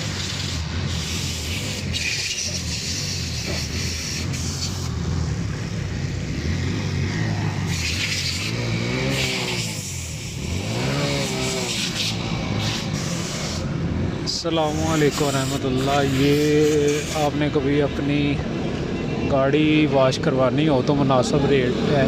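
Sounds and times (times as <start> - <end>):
motorcycle engine running: 0.0 - 17.6
road hiss: 0.0 - 18.4.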